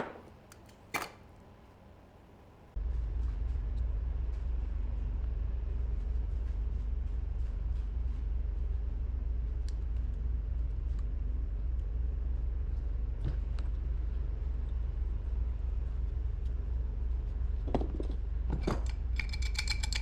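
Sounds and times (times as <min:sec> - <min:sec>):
steady low rumble: 0:02.7 - 0:18.5.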